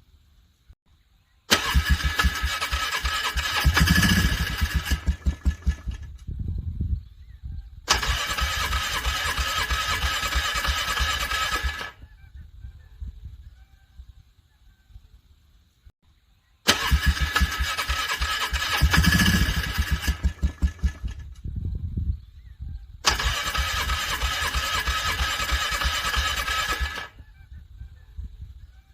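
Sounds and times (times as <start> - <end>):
car engine cranking: 1.5 - 6.2, 7.9 - 12.0, 16.7 - 21.3, 23.1 - 27.1.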